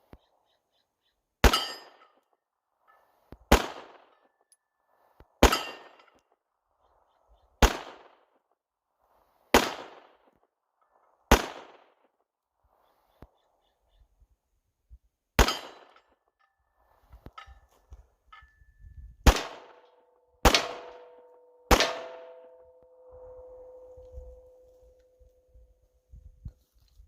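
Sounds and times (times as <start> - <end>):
pistol shots with echo: 3.5 - 4.1, 5.4 - 6.0, 7.6 - 8.3, 9.6 - 10.2, 11.3 - 12.0, 15.4 - 16.0, 19.2 - 22.8.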